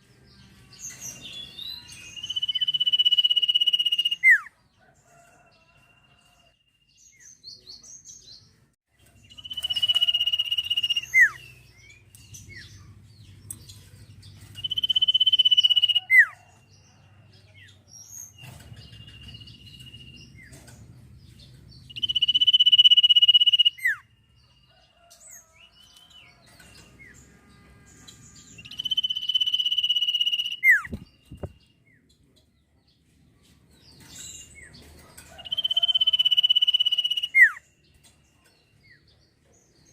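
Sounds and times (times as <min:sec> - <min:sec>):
bird high whistles: 0:09.4 - 0:11.4, 0:14.6 - 0:16.4.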